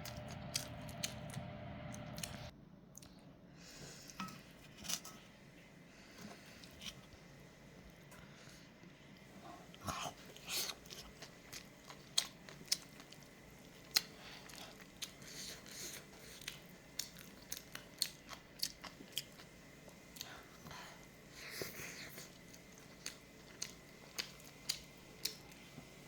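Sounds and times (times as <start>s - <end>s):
person chewing food: 0.0s - 3.3s, 9.2s - 25.9s.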